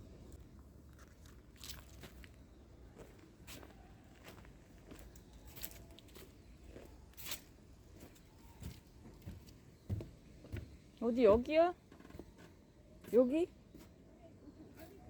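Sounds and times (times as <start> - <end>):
cat eating crunches: 0.1 - 2.4.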